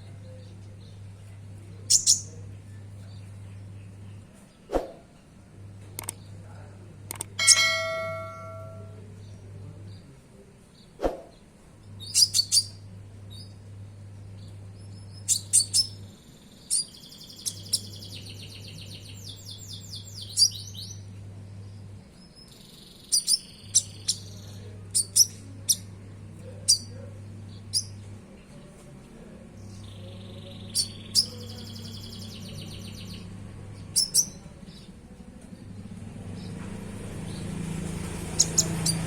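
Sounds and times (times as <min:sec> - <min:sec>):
songbird chirping and trilling: 0:00.0 - 0:04.7, 0:05.9 - 0:39.0
low hum: 0:05.5 - 0:09.8.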